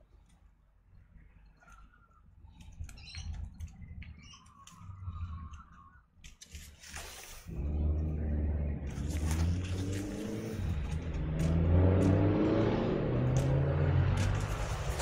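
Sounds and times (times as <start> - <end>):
tape tearing: 6.4 - 7.5
adhesive tape pulled off roll: 6.4 - 7.6
loud low droning hum: 7.5 - 15.0.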